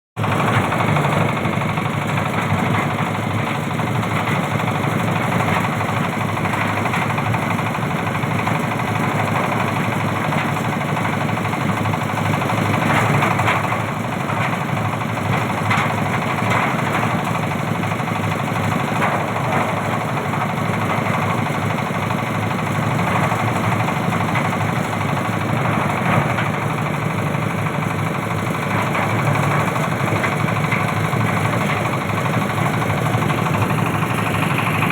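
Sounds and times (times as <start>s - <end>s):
engine drone: 27.0s - 34.9s.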